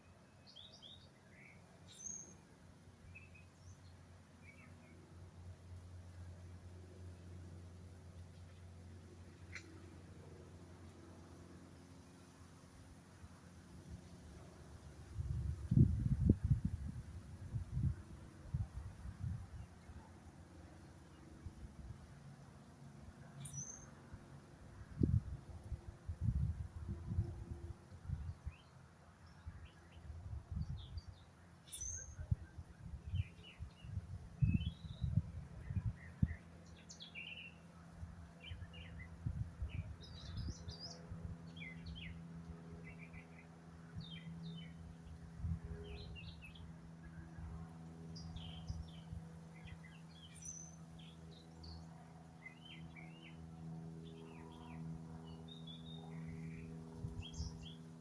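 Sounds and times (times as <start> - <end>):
steady low hum: 1.2 - 58.0
songbirds chirping and singing: 30.8 - 37.7.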